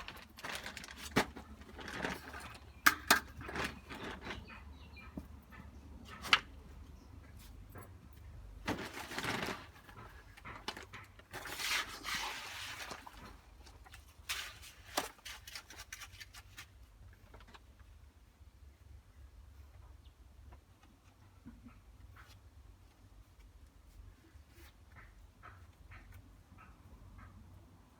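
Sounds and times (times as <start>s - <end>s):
wet concrete being scraped: 11.4s - 13.4s.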